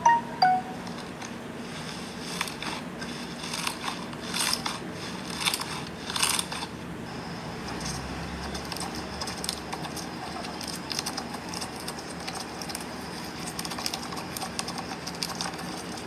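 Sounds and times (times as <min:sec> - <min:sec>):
low steady hum: 0:00.0 - 0:01.5.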